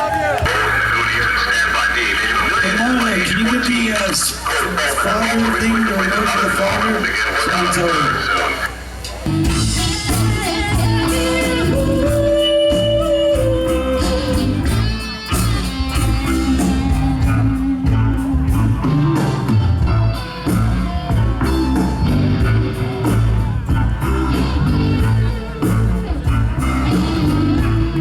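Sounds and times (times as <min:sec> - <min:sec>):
live rock music: 0:00.0 - 0:28.0
electric guitar: 0:08.6 - 0:28.0
steady drum beat: 0:09.3 - 0:28.0.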